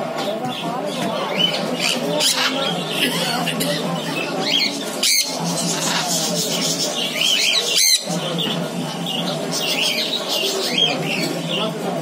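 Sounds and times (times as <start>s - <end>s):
caged birds chirping: 0.0s - 12.0s
parrots screeching: 1.4s - 3.3s, 4.4s - 8.2s.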